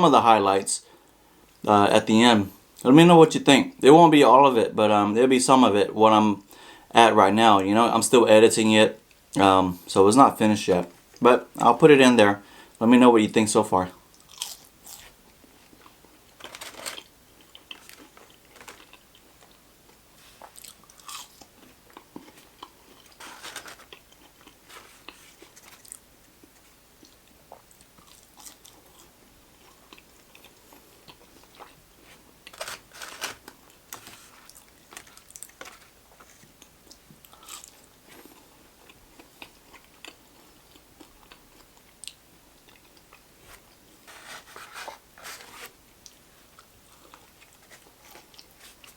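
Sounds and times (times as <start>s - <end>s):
person chewing and crunching food: 14.1s - 48.9s.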